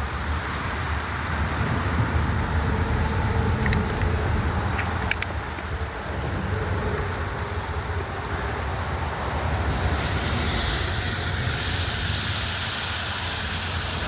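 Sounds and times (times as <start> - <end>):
steady low rumble: 0.0 - 14.0
meat sizzling in a pan: 9.7 - 14.0.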